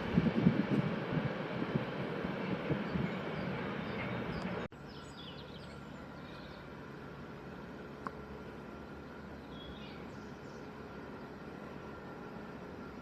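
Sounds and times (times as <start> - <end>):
train noise: 0.0 - 13.0
birds chirping: 2.5 - 6.7, 9.0 - 11.4.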